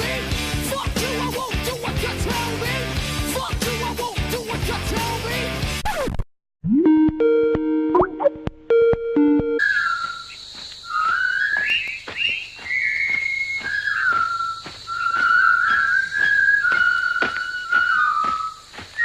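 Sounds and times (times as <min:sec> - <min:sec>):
short electronic beeps: 0:06.6 - 0:09.6
person whistling a tune: 0:11.0 - 0:19.0.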